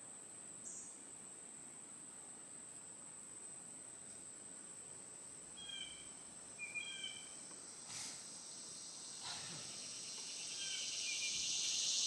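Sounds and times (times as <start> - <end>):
insect chorus: 4.8 - 12.0.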